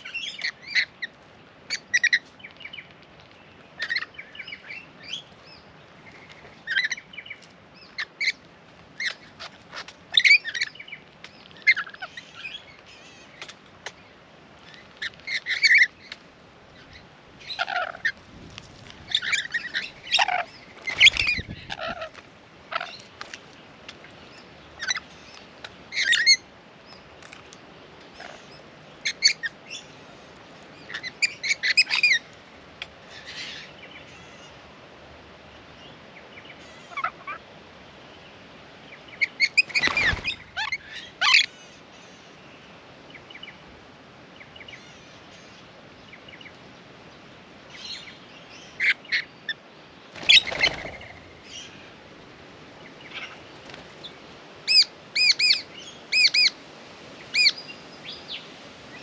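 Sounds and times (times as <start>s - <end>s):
parrots screeching: 14.7s - 15.9s, 17.4s - 18.2s, 19.1s - 23.0s, 25.9s - 26.4s, 36.7s - 37.4s, 39.2s - 41.5s.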